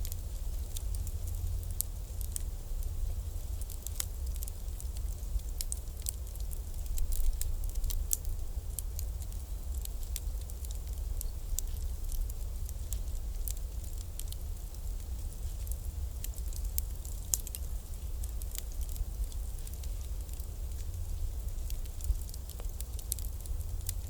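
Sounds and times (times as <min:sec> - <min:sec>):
bonfire crackling: 0:00.0 - 0:24.0
low rumble of fire: 0:00.0 - 0:24.0.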